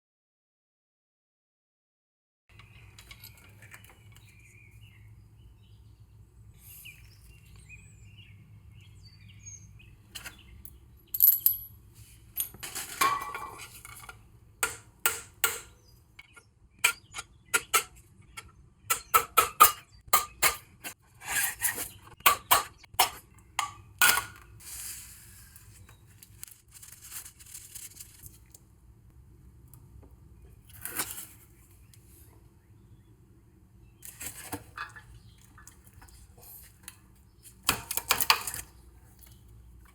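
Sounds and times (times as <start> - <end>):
metal tools clinking: 11.1 - 11.8.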